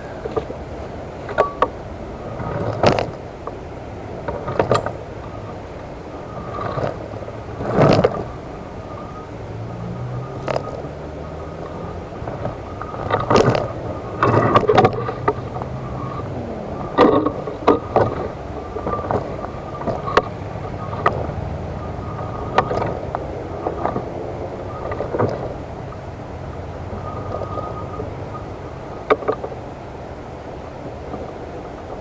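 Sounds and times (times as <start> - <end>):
faint motor hum: 0.0 - 32.0
wheelchair knocks and rattles: 12.2 - 15.8.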